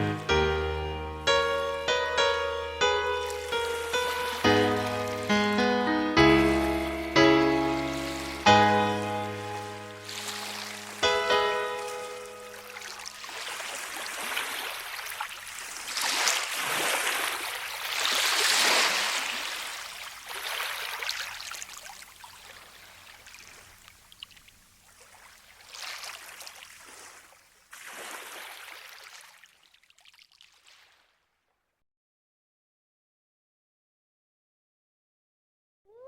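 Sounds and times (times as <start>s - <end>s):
rushing water: 2.8s - 31.1s.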